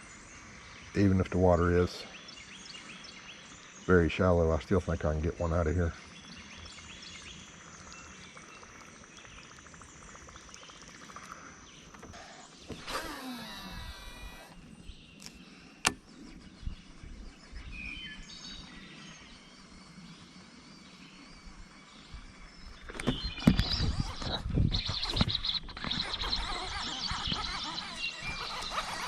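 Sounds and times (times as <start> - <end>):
bird chirps: 0.0 - 29.0
faint insect tones: 0.0 - 29.0
whirring falling in pitch: 12.1 - 14.7.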